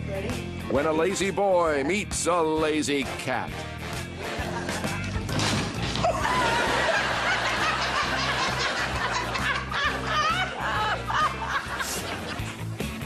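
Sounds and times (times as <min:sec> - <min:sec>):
background music: 0:00.0 - 0:13.0
person laughing: 0:06.0 - 0:12.6.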